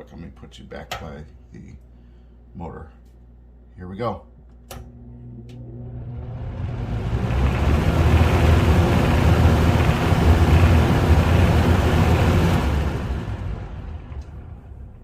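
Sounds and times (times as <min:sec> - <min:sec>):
box fan running: 0:04.7 - 0:15.0.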